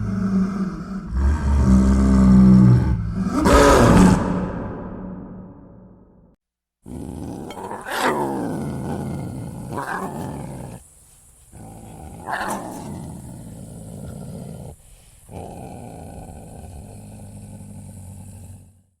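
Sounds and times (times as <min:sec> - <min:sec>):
leopard roaring and growling: 0:00.0 - 0:05.6, 0:06.8 - 0:10.9, 0:11.5 - 0:18.9
steady high hiss: 0:08.6 - 0:17.5.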